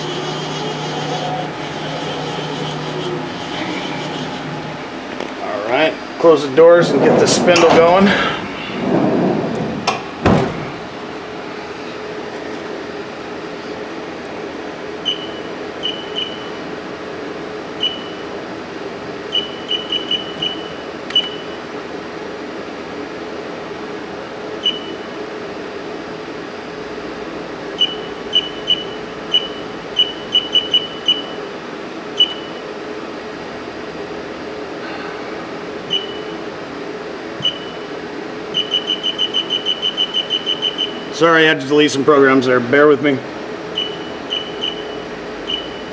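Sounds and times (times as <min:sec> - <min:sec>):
machine hum: 0:00.0 - 0:13.4.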